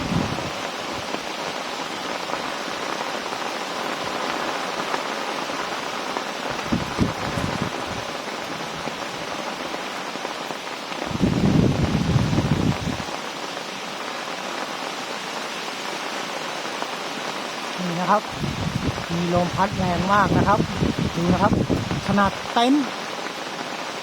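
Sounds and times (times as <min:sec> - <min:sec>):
wind buffeting microphone: 0:00.0 - 0:01.2, 0:06.4 - 0:09.6, 0:11.0 - 0:13.2, 0:18.2 - 0:22.5
steady rain: 0:00.0 - 0:24.0.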